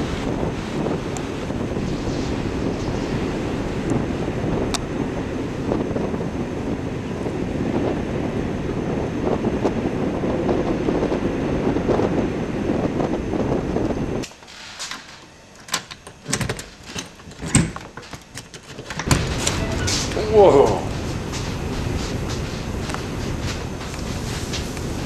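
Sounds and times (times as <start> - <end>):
wind gusting across microphone: 0.0 - 25.0
scattered knocks and clicks: 14.9 - 20.2.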